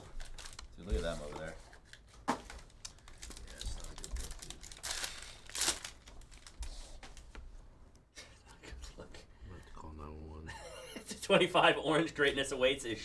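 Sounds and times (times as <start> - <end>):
wrappers crinkling and tearing: 0.0 - 7.3
cards rustling: 0.0 - 7.4.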